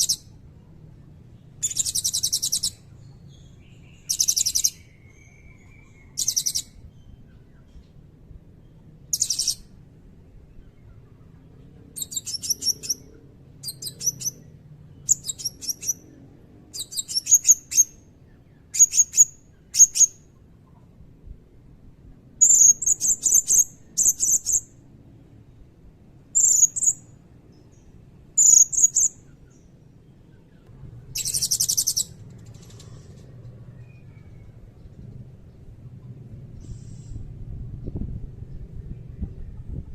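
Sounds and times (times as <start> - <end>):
parrot chirping: 1.6 - 6.7, 9.1 - 9.6, 12.0 - 14.5, 15.1 - 16.0, 16.7 - 18.0, 31.2 - 32.1.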